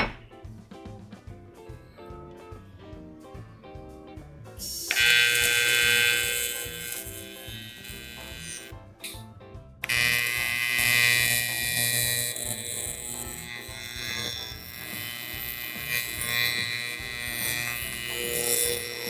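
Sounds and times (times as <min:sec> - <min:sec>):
background music: 0:00.0 - 0:19.0
small power tool buzzing: 0:04.6 - 0:09.2, 0:09.8 - 0:19.0.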